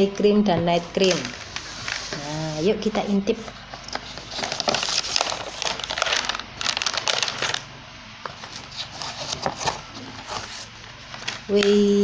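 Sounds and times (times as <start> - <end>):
packaging crinkling and rustling: 1.0 - 2.3, 3.6 - 11.8.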